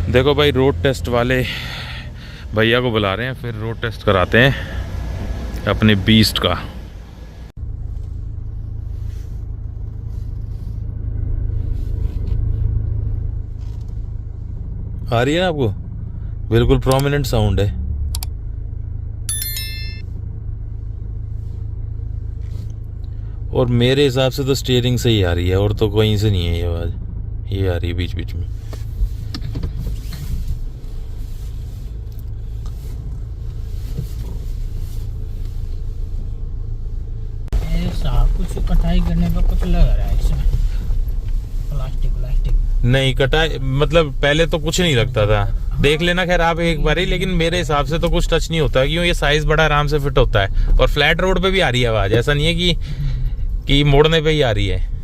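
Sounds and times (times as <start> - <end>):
vehicle cabin rumble: 0.0 - 55.0.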